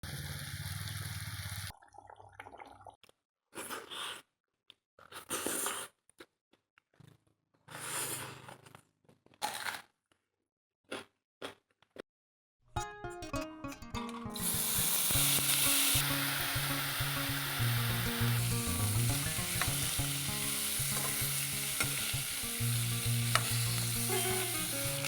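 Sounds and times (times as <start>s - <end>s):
crunching and chewing: 8.2s - 10.2s, 10.9s - 12.0s.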